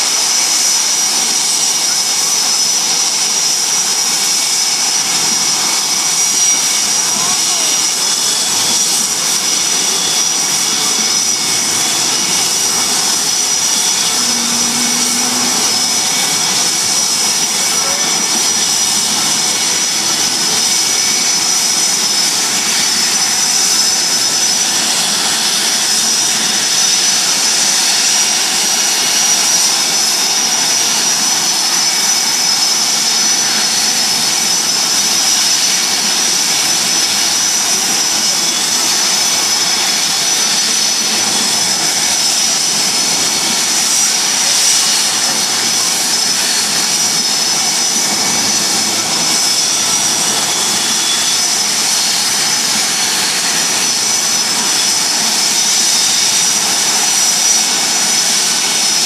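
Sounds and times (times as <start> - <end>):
jet engines running: 0.0 - 59.0.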